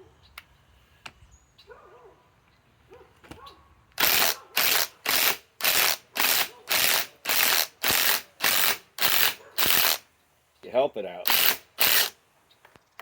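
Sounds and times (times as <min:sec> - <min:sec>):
impact wrench hammering: 0:04.0 - 0:10.0, 0:11.3 - 0:12.2.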